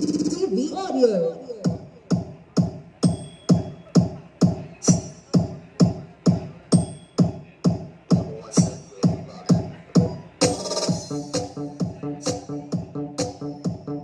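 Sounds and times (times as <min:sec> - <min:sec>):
electronic dance music: 0:00.0 - 0:14.0
heavy kick drum thudding: 0:01.7 - 0:10.2.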